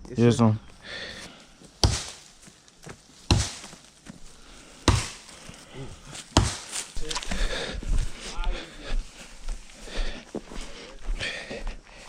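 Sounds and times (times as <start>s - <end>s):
blade chopping into wood: 1.8s - 2.3s, 3.2s - 3.8s, 4.8s - 5.3s, 6.2s - 7.3s.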